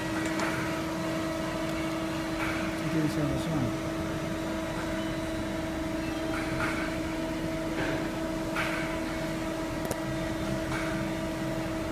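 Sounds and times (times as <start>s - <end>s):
machine humming: 0.0s - 11.9s.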